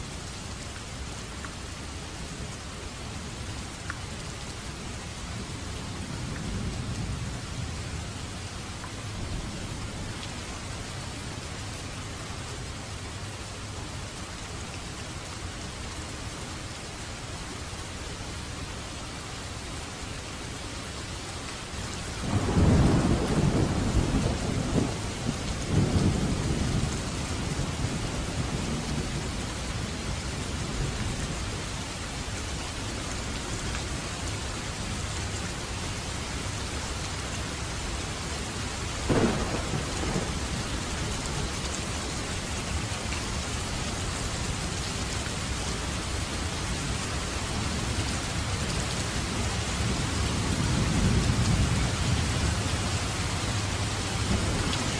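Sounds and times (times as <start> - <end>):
heavy rain: 0.0 - 54.9
rolling thunder: 22.2 - 29.3, 39.1 - 41.6, 49.5 - 54.9
sharp thunder crack: 39.1 - 40.5.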